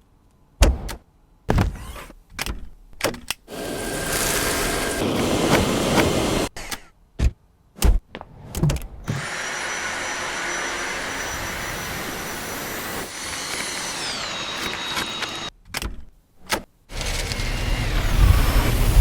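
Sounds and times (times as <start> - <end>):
stick vacuum cleaner running: 3.5 - 6.5, 9.1 - 15.5.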